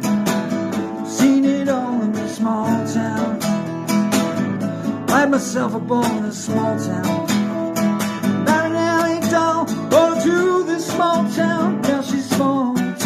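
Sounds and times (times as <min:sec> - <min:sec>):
slide blues acoustic guitar: 0:00.0 - 0:13.0.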